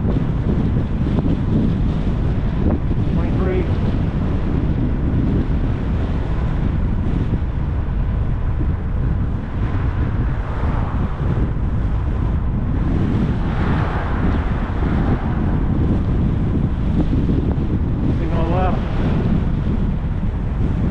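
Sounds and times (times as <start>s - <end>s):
wind buffeting microphone: 0.0s - 20.9s.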